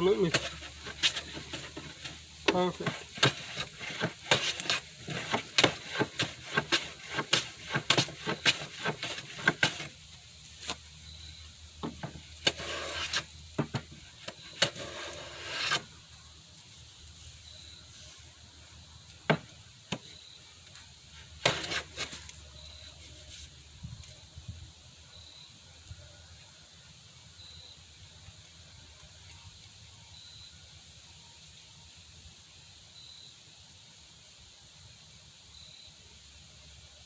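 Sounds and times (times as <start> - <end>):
hand plane rasping on wood: 2.8 - 9.9, 12.5 - 13.3, 14.6 - 15.9, 21.4 - 22.2.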